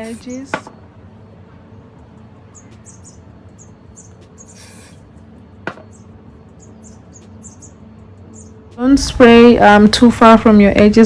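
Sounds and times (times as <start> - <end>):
aerosol hairspray hiss: 4.5 - 5.0.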